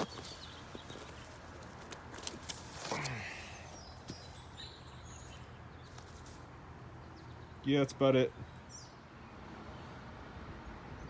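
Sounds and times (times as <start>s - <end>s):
leaves rustling and twigs clicking: 0.0s - 3.4s.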